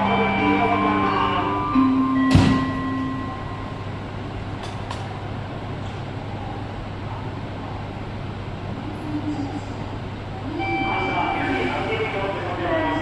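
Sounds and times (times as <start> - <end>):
station departure melody: 0.0 - 4.5
train humming at platform: 0.0 - 13.0
sharp knock: 2.3 - 2.8.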